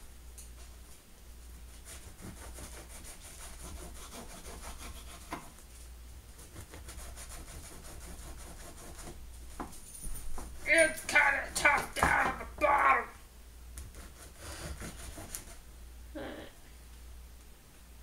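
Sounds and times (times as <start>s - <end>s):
knife sawing through bread: 1.7s - 5.6s, 6.4s - 9.2s, 13.8s - 15.6s.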